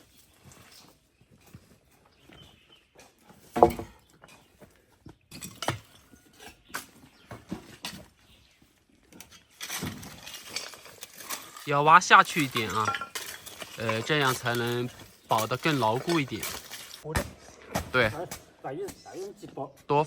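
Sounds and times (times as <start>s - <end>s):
concrete knocks thuds and scrapes: 3.3s - 8.3s, 9.0s - 11.6s, 12.2s - 19.3s.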